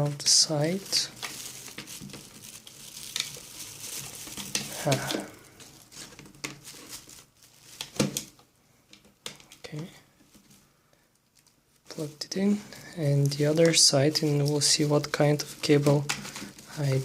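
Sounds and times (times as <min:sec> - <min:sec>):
cable rustling: 0:00.0 - 0:17.0.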